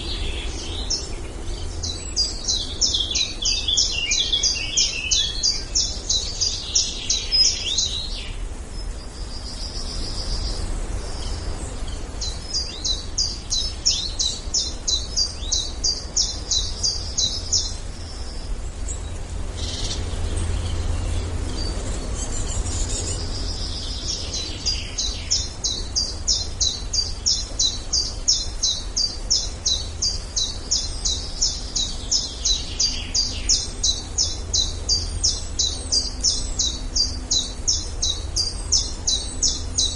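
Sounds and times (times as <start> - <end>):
birds chirping: 0.0 - 39.9.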